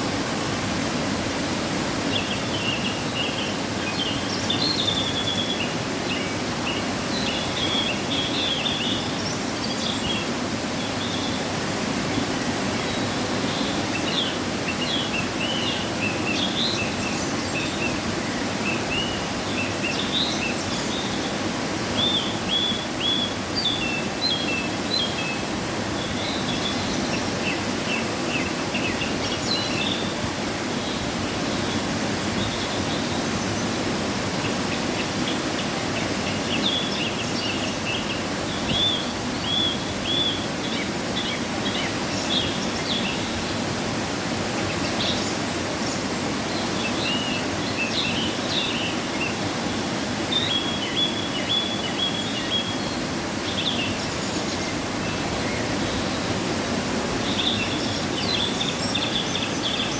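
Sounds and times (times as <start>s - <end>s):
waterfall rushing: 0.0s - 59.9s
small birds chirping: 44.6s - 59.9s.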